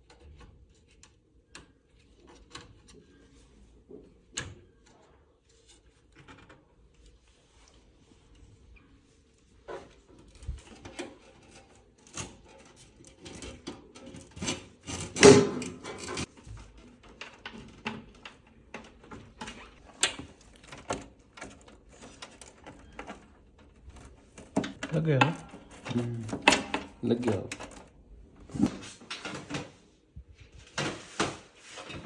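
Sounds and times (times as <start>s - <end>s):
computer parts clicking and knocking: 10.3s - 29.7s.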